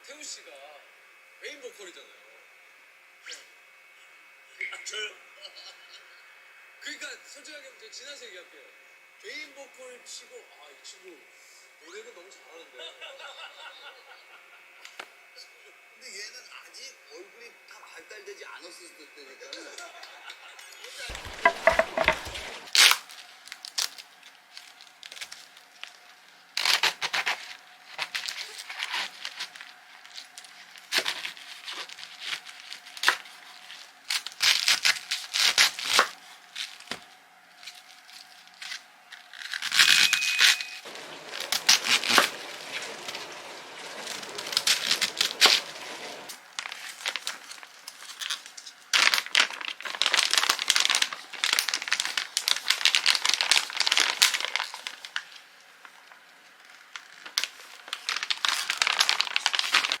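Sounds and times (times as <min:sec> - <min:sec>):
packaging crinkling and tearing: 0:21.1 - 1:00.0.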